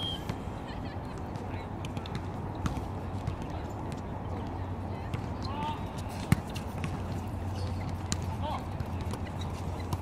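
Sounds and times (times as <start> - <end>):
din of sports hall: 0.0 - 10.0
sneakers squeaking on gym floor: 5.1 - 10.0.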